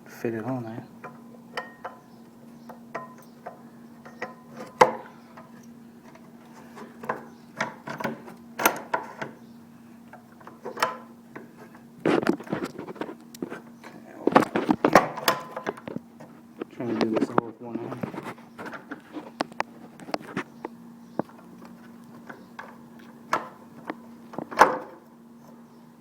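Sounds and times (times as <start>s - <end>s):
steady low hum: 0.0s - 26.0s
metal clicks and knocks: 2.7s - 9.4s, 10.1s - 11.5s, 14.3s - 16.3s, 21.2s - 25.0s.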